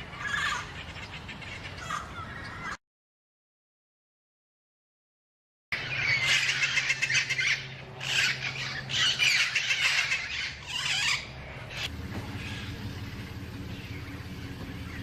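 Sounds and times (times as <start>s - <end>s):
parrots squawking: 0.1s - 2.8s, 5.8s - 13.1s
low steady hum: 5.8s - 15.0s.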